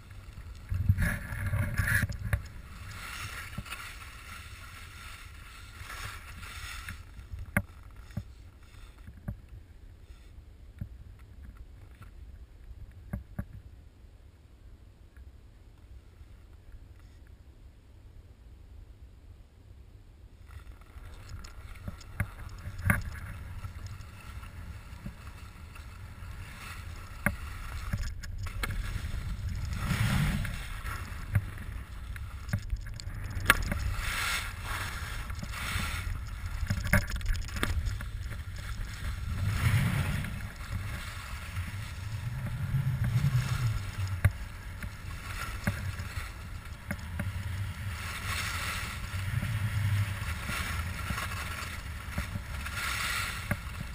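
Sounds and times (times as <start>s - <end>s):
skis scraping on snow: 0.0s - 9.1s, 20.5s - 53.9s
wind rumbling on microphone: 0.0s - 10.0s, 20.3s - 53.9s.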